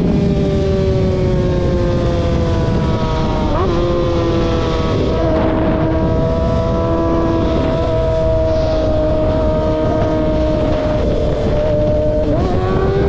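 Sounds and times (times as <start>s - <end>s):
car engines running: 0.0s - 13.0s
heavy low rumble: 0.0s - 13.0s.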